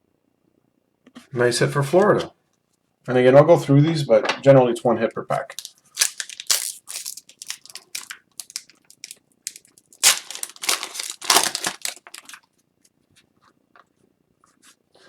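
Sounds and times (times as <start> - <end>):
wrapper crinkling and crumpling: 5.4 - 12.5
cards being handled: 5.5 - 12.4.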